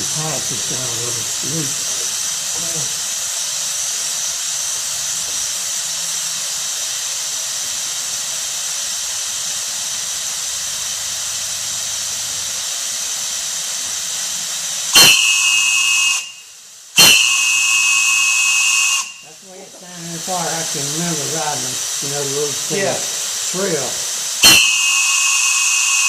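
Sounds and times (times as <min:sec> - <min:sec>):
steady high hiss: 0:00.0 - 0:26.0
steam locomotive whistle: 0:14.9 - 0:19.3, 0:24.4 - 0:26.0.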